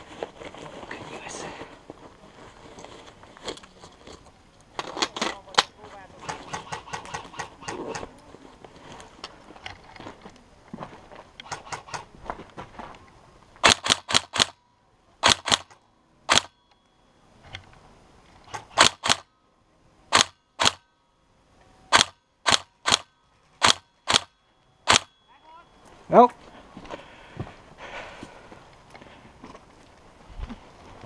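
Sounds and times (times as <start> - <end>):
rustling and shuffling: 0.0 - 13.6, 25.7 - 31.0
airsoft rifle shots: 5.0 - 8.0, 11.4 - 12.1, 13.6 - 14.6, 15.2 - 16.6, 18.5 - 19.3, 20.1 - 20.9, 21.9 - 25.2.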